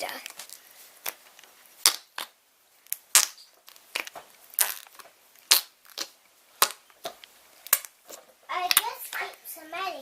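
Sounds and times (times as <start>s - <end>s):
toy fart canister pops: 1.8s - 6.8s.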